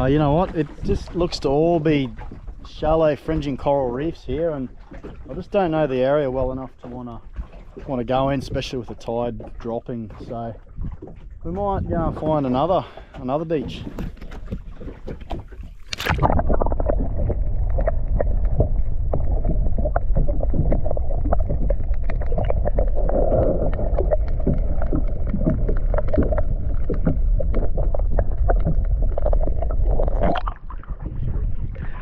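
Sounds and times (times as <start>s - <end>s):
water slapping against hull: 0.0s - 32.0s
wind rushing on microphone: 10.7s - 12.6s, 16.1s - 32.0s.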